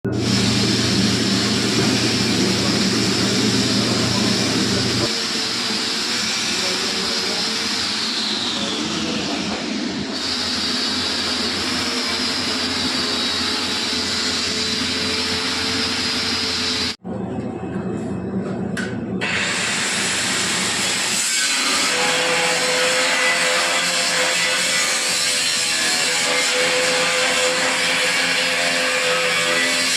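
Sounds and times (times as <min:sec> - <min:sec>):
steady mechanical noise: 0:00.0 - 0:29.9.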